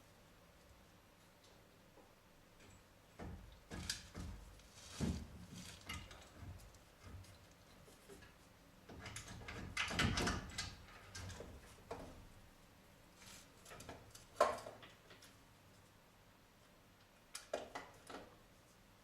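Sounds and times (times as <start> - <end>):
hand tools and metal parts clattering: 2.7 - 11.9.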